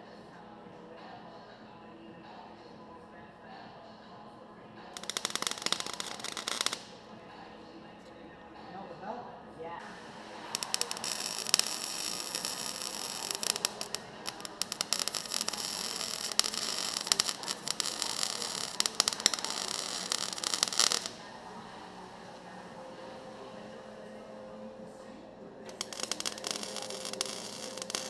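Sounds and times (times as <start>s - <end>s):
welding arc crackling and popping: 5.0s - 6.9s, 9.9s - 21.2s, 25.7s - 28.0s.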